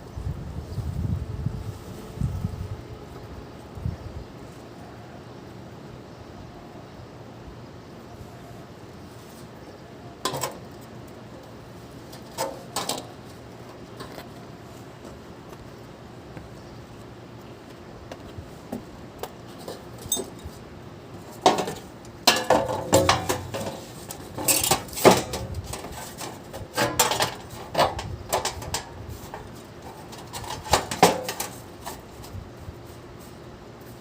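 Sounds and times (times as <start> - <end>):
metal objects clinking: 19.7 - 20.4, 21.5 - 26.0.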